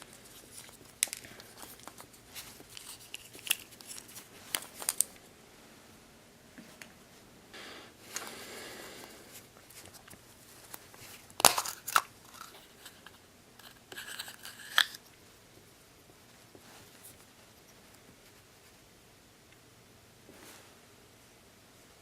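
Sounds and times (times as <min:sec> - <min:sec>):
wrapper crinkling and rustling: 0:00.0 - 0:05.2.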